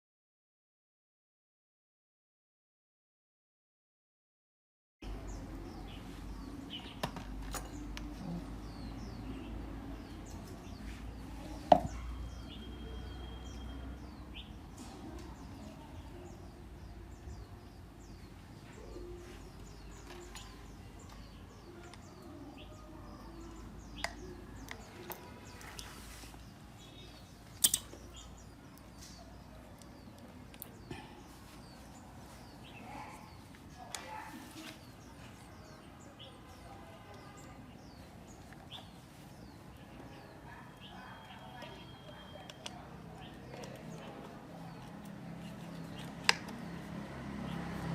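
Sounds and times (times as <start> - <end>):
small birds chirping: 5.0 - 47.9
faint small bird chirps: 18.8 - 30.9
sharp click: 27.6 - 28.0.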